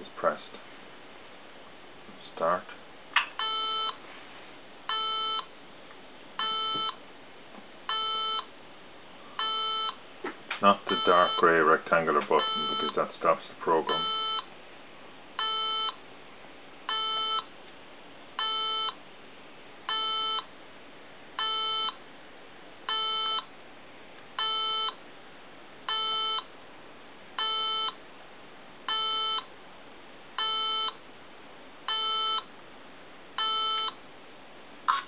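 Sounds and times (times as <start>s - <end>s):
short electronic beeps: 12.4s - 13.0s, 16.9s - 17.6s, 31.9s - 32.6s, 33.4s - 34.0s.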